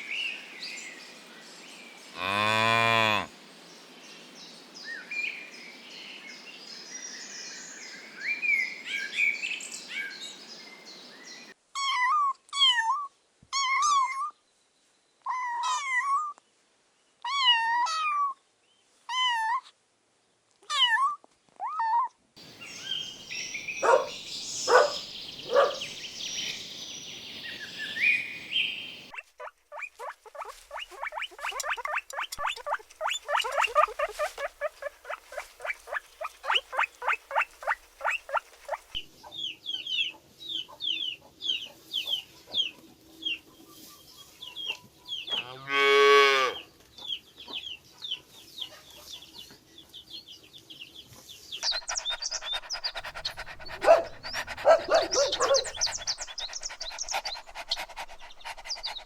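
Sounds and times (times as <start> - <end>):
cow moo: 2.2 - 3.3
high chirping: 22.6 - 39.1, 51.6 - 59.0.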